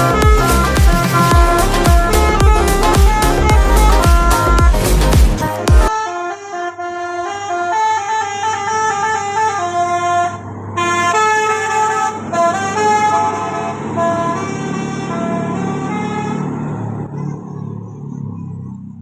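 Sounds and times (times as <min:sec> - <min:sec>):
multi-tone air horn playing a tune: 0:00.0 - 0:16.6.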